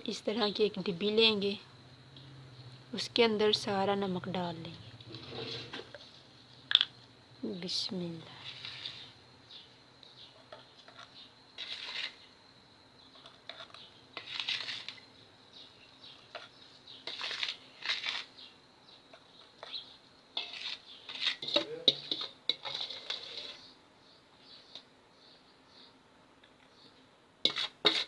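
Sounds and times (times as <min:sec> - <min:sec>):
clinks and scrapes on container: 0:05.0 - 0:06.9, 0:08.3 - 0:09.2, 0:10.3 - 0:12.3, 0:13.1 - 0:15.1, 0:16.1 - 0:18.4, 0:19.1 - 0:23.8, 0:27.4 - 0:28.0.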